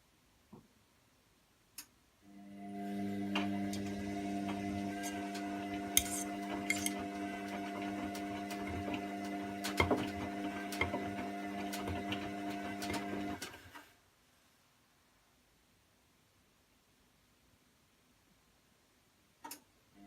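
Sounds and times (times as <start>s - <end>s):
washing machine motor hum: 2.3s - 13.8s.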